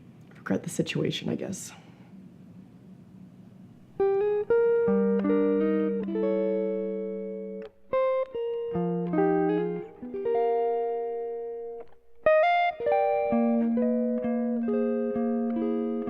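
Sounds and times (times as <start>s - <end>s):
guitar plucking chords: 3.8s - 16.0s.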